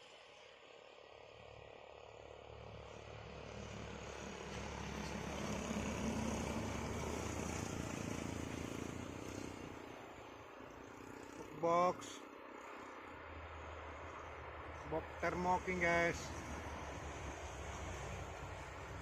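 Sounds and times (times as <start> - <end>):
truck diesel engine pulling uphill: 1.4 - 11.9.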